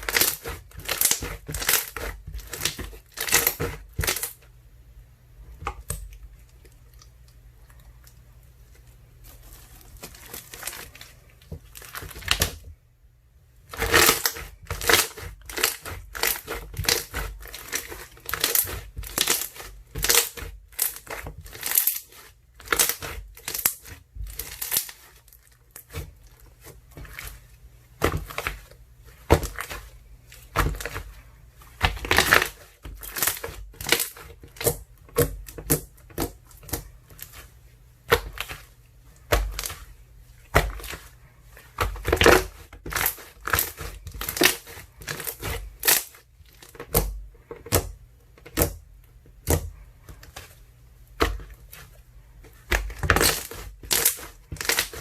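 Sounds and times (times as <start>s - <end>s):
slime crackling and popping: 0.0s - 4.4s, 13.7s - 26.1s, 31.8s - 37.4s, 41.8s - 47.8s, 52.6s - 55.0s.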